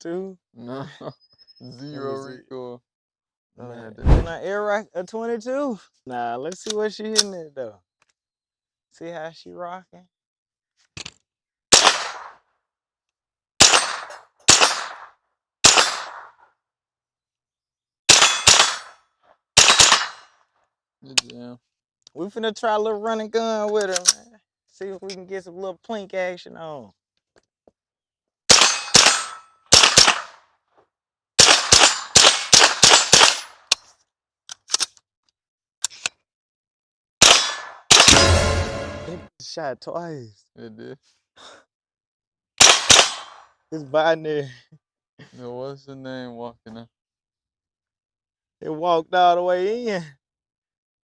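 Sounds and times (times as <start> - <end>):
rifle shots with echo: 11.7 - 12.4, 13.6 - 16.4, 18.1 - 18.9, 19.6 - 20.3, 28.5 - 30.4, 31.4 - 33.6, 37.2 - 39.1, 42.6 - 43.4
faint gunshot snaps: 11.8 - 12.4.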